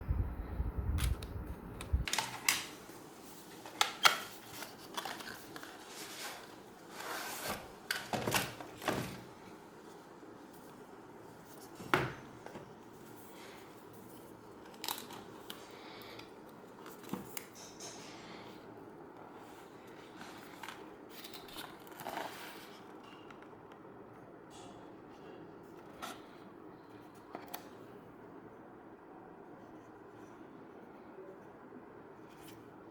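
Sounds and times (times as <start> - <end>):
packaging rustling and scraping: 3.5 - 9.3.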